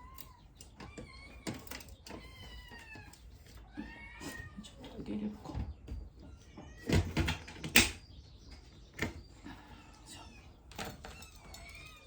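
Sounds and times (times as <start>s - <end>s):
handling knocks and clicks: 0.0s - 3.6s.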